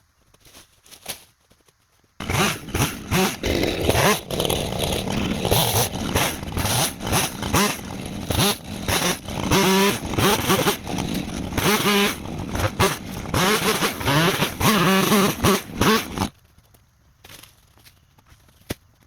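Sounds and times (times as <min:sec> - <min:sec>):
chainsaw revving: 0:02.2 - 0:16.3.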